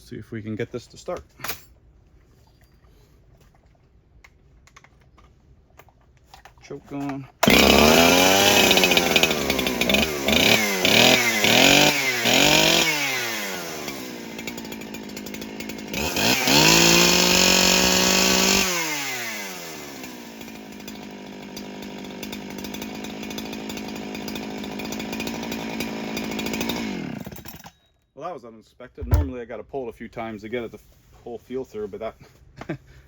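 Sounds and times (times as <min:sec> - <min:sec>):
chainsaw revving and idling: 0:07.4 - 0:27.7.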